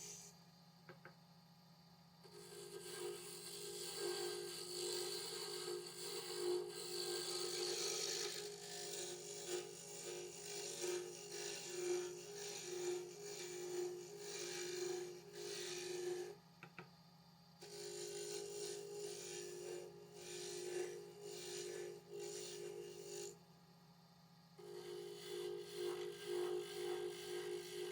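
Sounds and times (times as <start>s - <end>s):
wood rasping on lathe: 2.5s - 16.2s, 17.6s - 23.3s
wood lathe humming: 12.3s - 16.2s, 17.6s - 23.3s.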